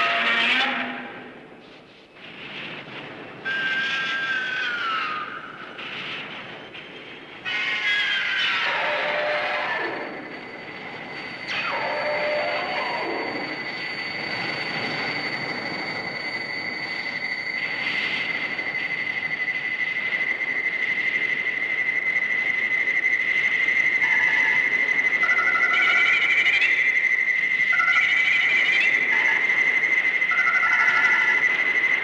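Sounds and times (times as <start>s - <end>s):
train running on rails: 0.0s - 32.0s
high-pitched squeal: 2.4s - 32.0s.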